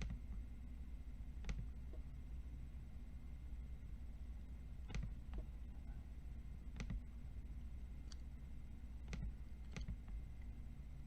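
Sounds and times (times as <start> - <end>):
low steady hum: 0.0 - 11.0
computer mouse clicks: 9.0 - 10.2.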